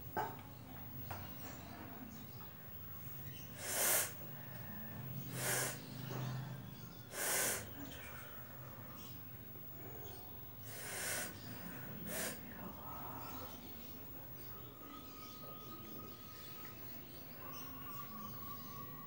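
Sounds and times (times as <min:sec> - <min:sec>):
person breathing forcefully: 0:03.6 - 0:04.2, 0:05.3 - 0:05.8, 0:07.1 - 0:07.7, 0:10.7 - 0:11.4.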